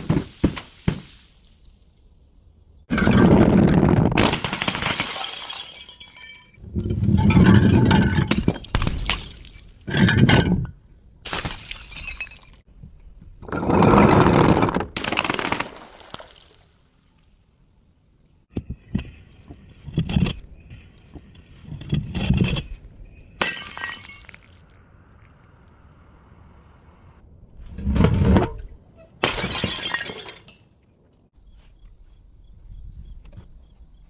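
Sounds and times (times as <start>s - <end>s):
glass bottle shattering: 4.2s - 10.6s, 11.3s - 12.6s, 15.0s - 16.8s, 23.4s - 24.8s, 29.2s - 30.7s.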